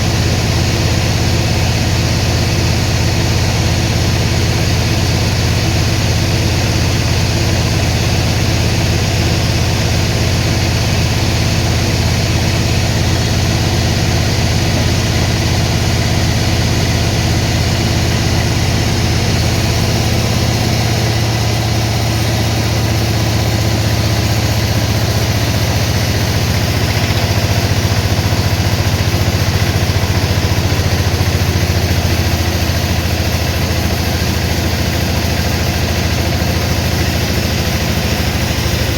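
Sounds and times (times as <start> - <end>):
sawmill machinery drone: 0.0 - 38.9.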